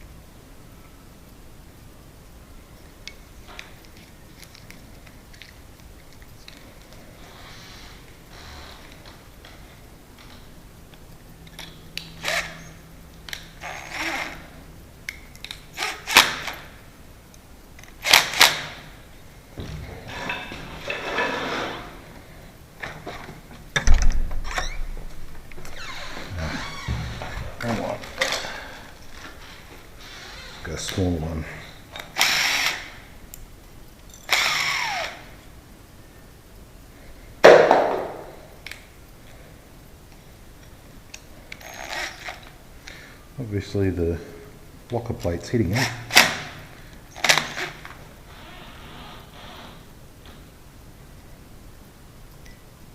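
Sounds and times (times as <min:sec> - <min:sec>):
power drill whirring: 0:12.2 - 0:12.7, 0:13.6 - 0:14.5, 0:32.1 - 0:33.0, 0:34.3 - 0:35.3, 0:41.6 - 0:42.4.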